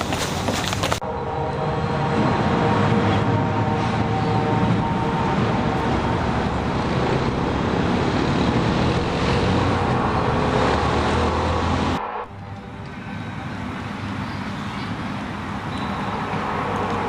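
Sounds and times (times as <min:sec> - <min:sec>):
loud low hum: 0:01.0 - 0:17.0
rumbling noise: 0:04.6 - 0:14.3.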